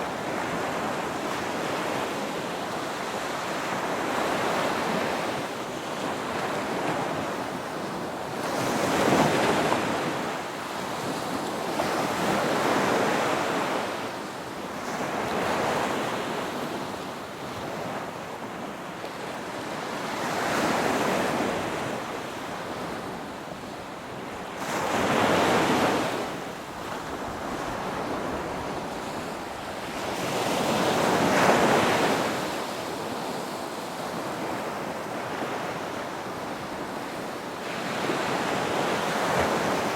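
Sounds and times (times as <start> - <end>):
ocean waves breaking: 24.2 - 39.9.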